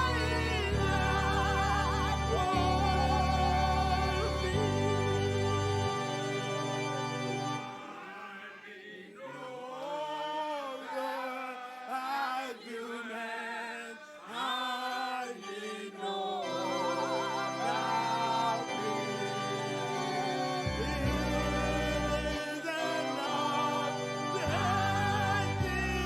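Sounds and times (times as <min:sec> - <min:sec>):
sustained chord accompaniment: 0:00.0 - 0:08.0, 0:16.4 - 0:26.0
gospel singing with vibrato: 0:00.0 - 0:26.0.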